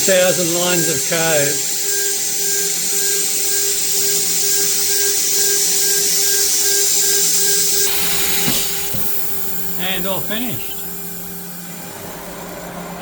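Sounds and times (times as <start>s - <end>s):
router spindle whine: 0.0s - 13.0s
metal cutting hiss: 7.2s - 13.0s.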